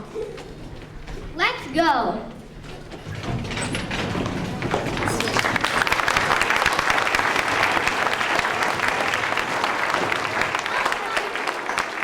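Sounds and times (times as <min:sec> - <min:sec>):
audience applauding: 0:04.6 - 0:12.0.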